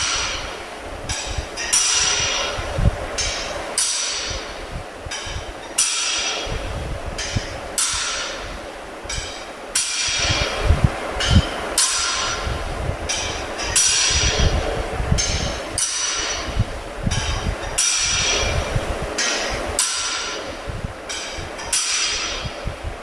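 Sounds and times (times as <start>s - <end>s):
low rumble: 12.2s - 23.0s.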